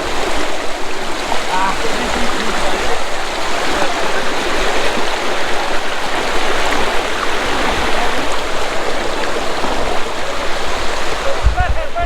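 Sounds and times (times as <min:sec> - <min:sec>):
stream water rushing: 0:00.0 - 0:12.0.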